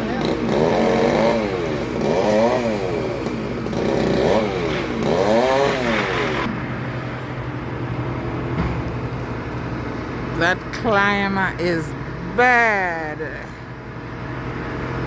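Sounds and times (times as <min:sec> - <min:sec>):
chainsaw revving: 0:00.0 - 0:06.5.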